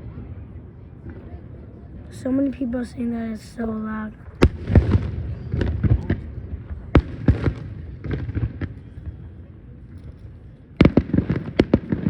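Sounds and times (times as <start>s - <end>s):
fireworks bursting: 2.1s - 9.4s, 10.8s - 12.0s.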